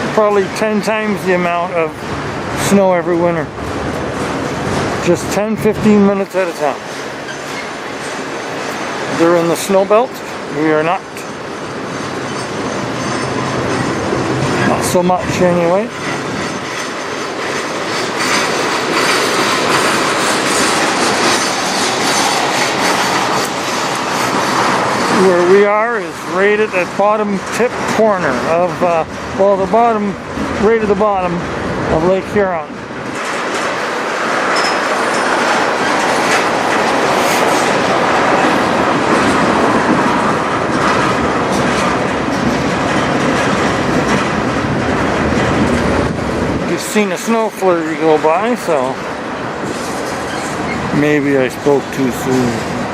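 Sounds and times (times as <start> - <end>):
freight train wheels clattering on rails: 0.0 - 52.9
train wheel squeal: 6.9 - 8.9, 11.2 - 14.6, 20.2 - 24.6, 34.5 - 35.5, 49.7 - 51.2.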